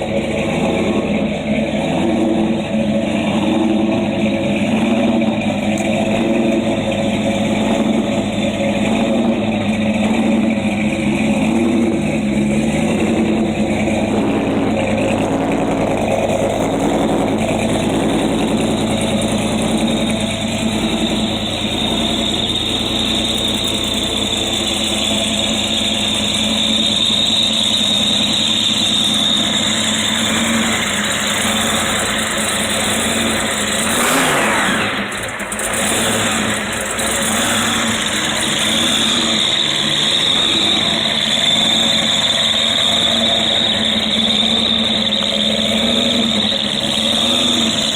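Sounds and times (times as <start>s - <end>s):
hot rod engine running: 0.0s - 47.9s
high steady whine: 2.2s - 33.9s.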